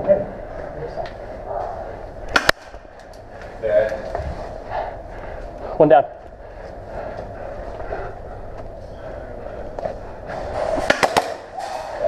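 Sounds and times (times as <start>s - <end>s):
airsoft gun shots: 2.3s - 2.7s, 10.8s - 11.9s.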